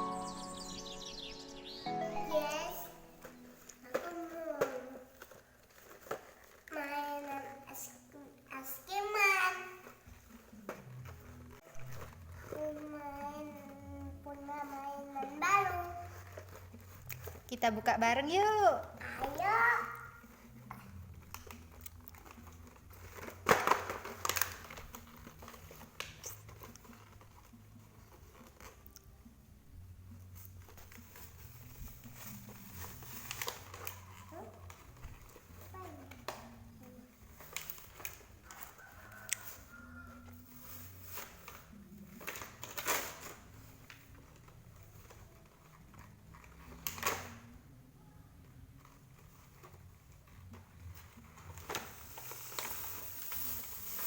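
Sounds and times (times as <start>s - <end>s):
plastic packaging crinkling: 3.1s - 7.9s, 20.2s - 29.1s, 30.4s - 47.5s, 48.7s - 54.0s.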